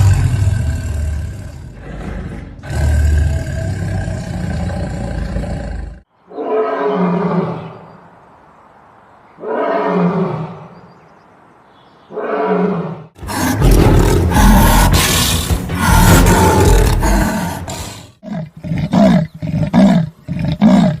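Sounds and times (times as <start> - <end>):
big cat growling: 0.0 - 6.1, 12.4 - 21.0
big cat roaring: 0.0 - 7.7, 12.1 - 21.0.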